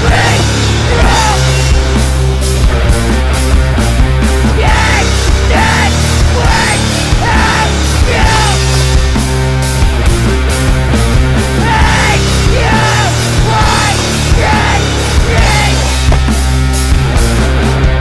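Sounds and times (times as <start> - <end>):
loud hard rock music: 0.0 - 18.0.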